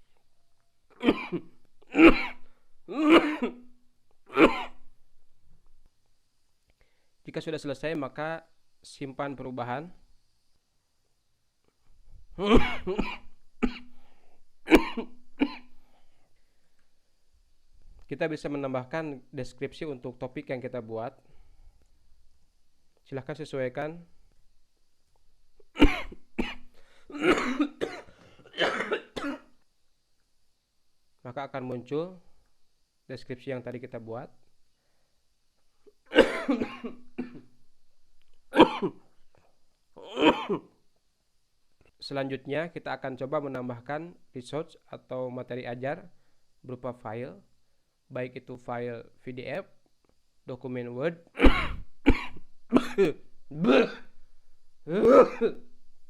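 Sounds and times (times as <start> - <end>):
man coughing: 1.0 - 3.7, 4.3 - 4.8, 12.4 - 13.9, 14.7 - 15.7, 25.8 - 29.5, 36.1 - 37.5, 38.5 - 39.0, 40.0 - 40.7, 51.4 - 54.1, 54.9 - 55.6.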